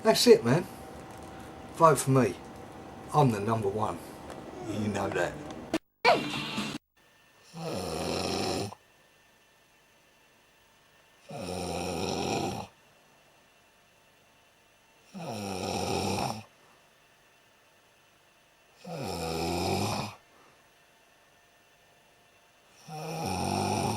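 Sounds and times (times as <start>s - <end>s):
person snoring: 7.5s - 8.8s, 11.3s - 12.8s, 15.1s - 16.5s, 18.8s - 20.2s, 22.8s - 23.9s.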